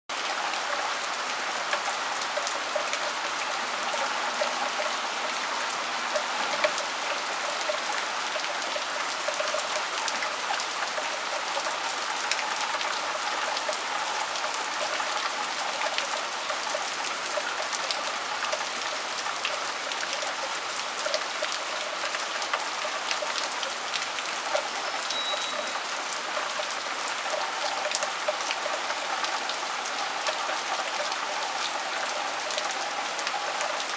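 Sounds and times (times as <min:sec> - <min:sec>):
raindrops ticking sharply: 0:00.1 - 0:33.9
steady rain falling: 0:00.1 - 0:33.9.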